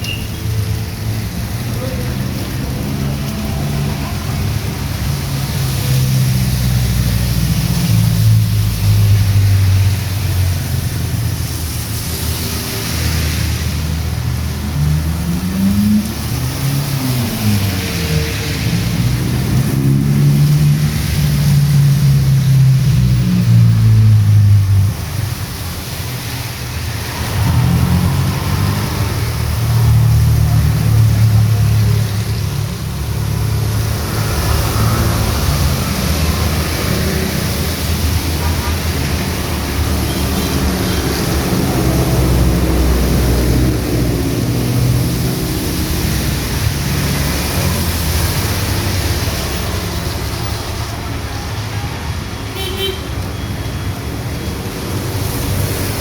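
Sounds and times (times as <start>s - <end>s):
heavy rain hiss: 0.0s - 56.0s
vehicles driving past: 0.0s - 56.0s
vehicle engine passing: 27.0s - 50.9s.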